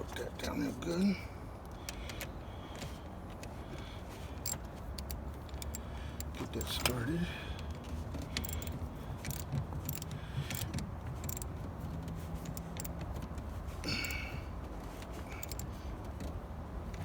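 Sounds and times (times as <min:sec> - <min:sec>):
steady low hum: 0:00.0 - 0:17.0
wrench clicking on metal nut: 0:04.4 - 0:07.1, 0:08.4 - 0:11.6, 0:12.4 - 0:13.0, 0:15.3 - 0:15.8.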